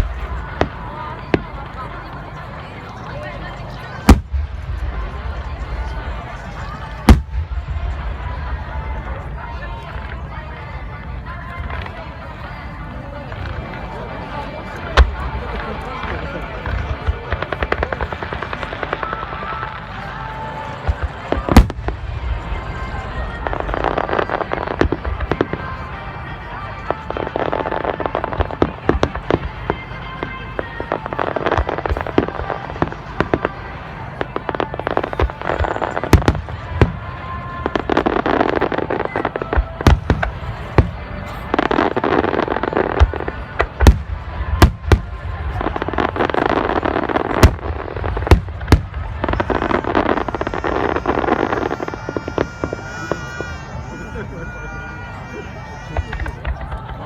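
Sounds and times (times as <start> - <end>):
fireworks booming: 0.0 - 2.5, 3.1 - 57.0
fireworks crackling: 0.0 - 57.0
small crackling firework pops: 13.3 - 25.8.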